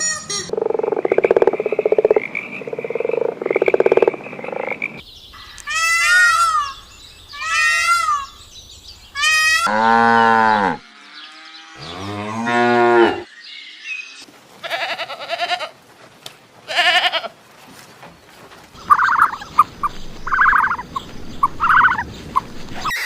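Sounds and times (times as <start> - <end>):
pulsed croaking: 0.5 - 5.0
high-pitched animal calls: 18.8 - 20.8.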